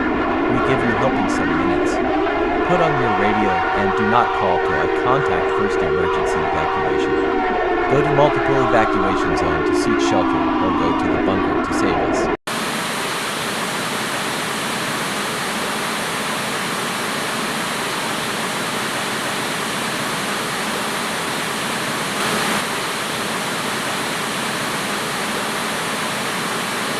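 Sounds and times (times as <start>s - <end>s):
static hiss: 22.1s - 22.7s.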